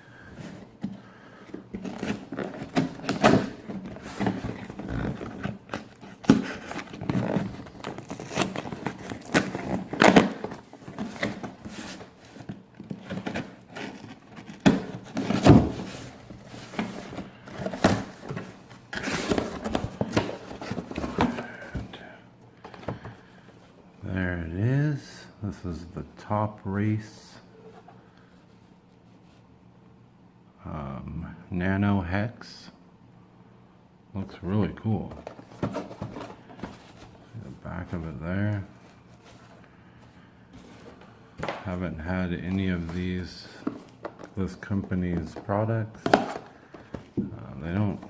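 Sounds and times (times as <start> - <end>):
cardboard package scraping and tearing: 1.7 - 22.0.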